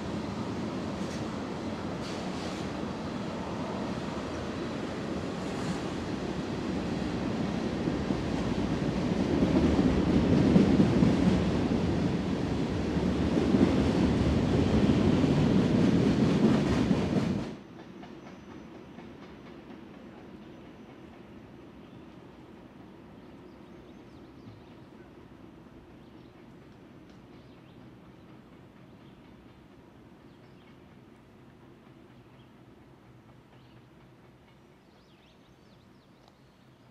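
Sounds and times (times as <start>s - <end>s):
train rolling past on rails: 0.0s - 36.1s.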